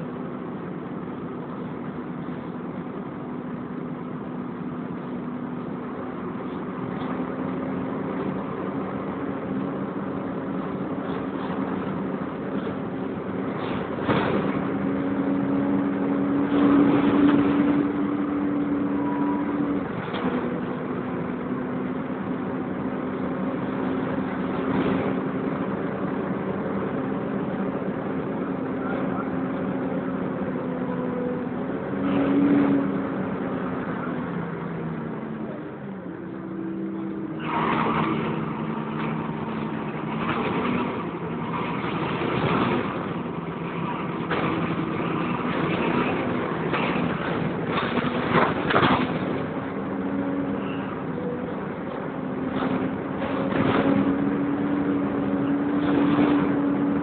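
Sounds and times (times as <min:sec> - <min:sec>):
bus engine driving: 0:00.0 - 0:57.0
cooling fan screech: 0:36.7 - 0:40.2.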